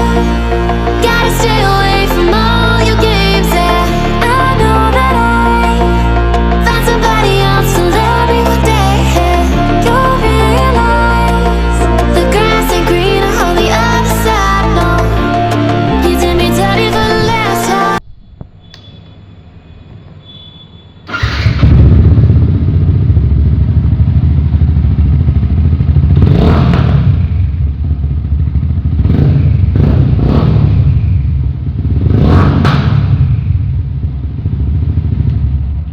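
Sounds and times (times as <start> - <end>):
motorcycle engine idling: 21.1 - 35.9.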